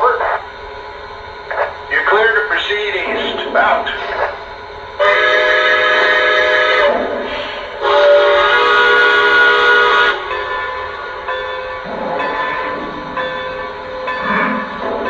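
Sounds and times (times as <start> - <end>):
model steam whistle blasts: 5.0 - 10.4.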